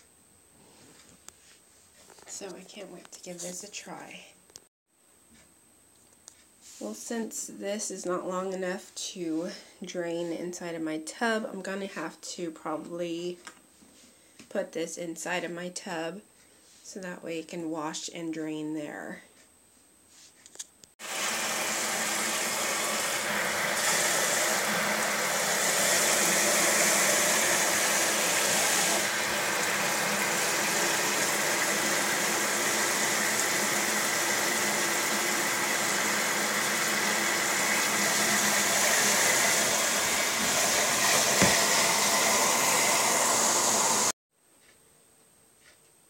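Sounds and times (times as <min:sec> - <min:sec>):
water running from a tap: 0:21.0 - 0:44.1.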